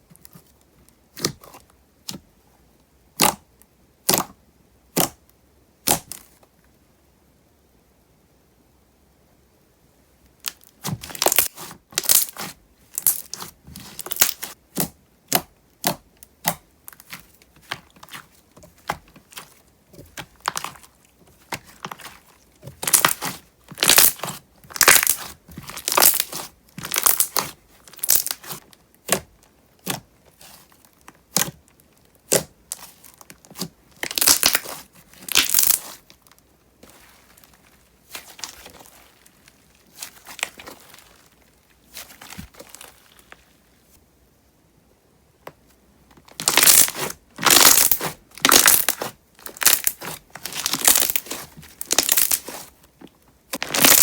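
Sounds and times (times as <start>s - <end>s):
slime squeezed by hand: 46.4s - 52.7s.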